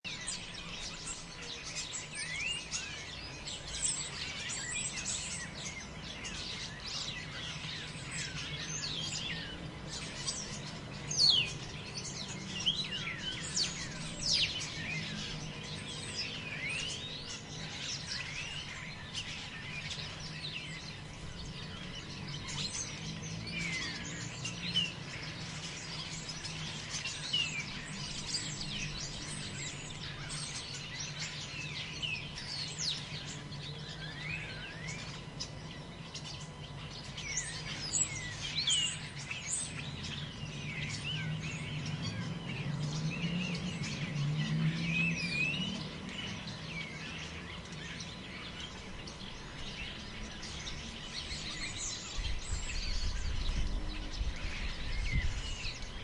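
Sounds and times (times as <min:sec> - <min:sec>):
birds chirping and calling: 0:00.0 - 0:56.0.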